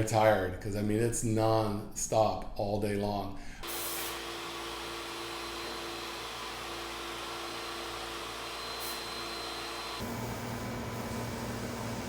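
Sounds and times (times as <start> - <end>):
hiss: 3.6 - 4.3, 8.4 - 10.0
workshop machinery whirring: 3.6 - 12.0.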